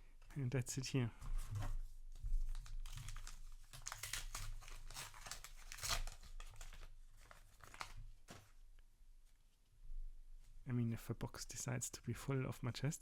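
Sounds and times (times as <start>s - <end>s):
crinkly wrapper tearing: 2.5s - 8.0s.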